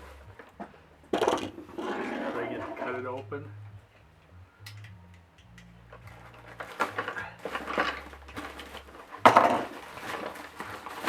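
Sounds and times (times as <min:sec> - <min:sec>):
packing rustling: 0:06.1 - 0:11.0.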